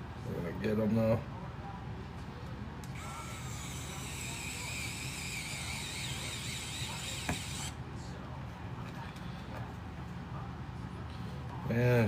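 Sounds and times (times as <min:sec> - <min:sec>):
electric screwdriver whining: 0:03.0 - 0:07.8.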